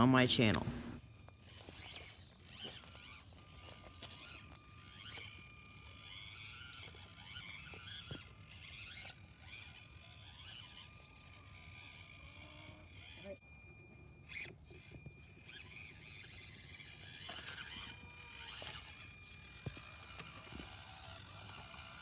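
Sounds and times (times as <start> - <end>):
electric motor whining: 0.0 - 22.0.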